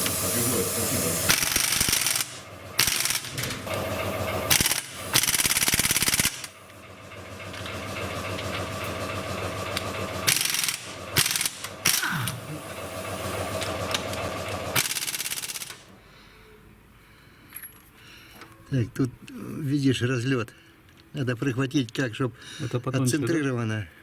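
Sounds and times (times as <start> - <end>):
pneumatic impact wrench rattling: 0.0 - 15.9.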